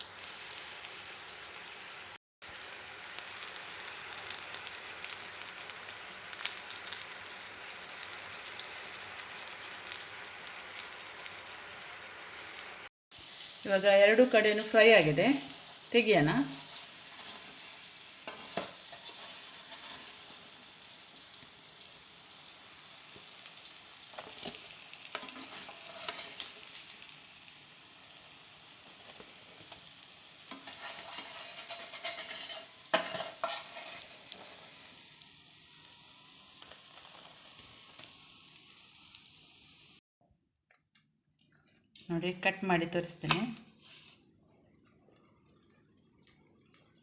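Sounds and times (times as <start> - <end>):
slices sizzling in hot oil: 0.0 - 40.0
utensil scraping a pan: 16.5 - 20.4, 24.2 - 26.6, 30.5 - 34.6.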